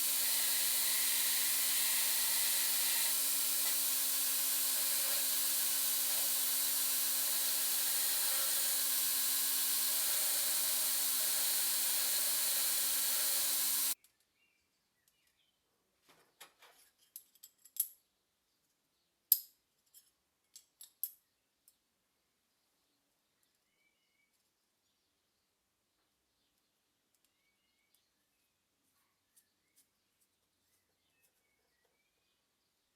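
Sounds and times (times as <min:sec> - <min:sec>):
power tool running: 0:00.0 - 0:14.0.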